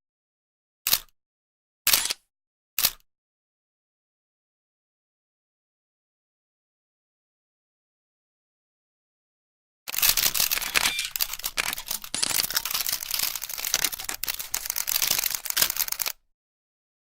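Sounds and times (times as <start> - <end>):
camera shutter clicks: 1.9 - 2.2, 2.8 - 3.0, 9.9 - 16.1.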